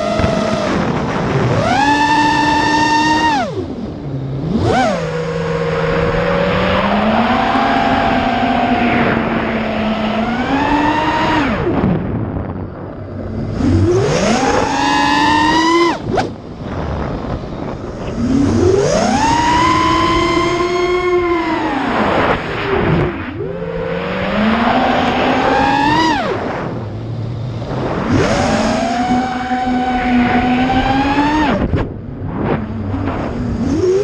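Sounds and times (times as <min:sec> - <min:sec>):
quadcopter motors whining: 0:00.0 - 0:34.0.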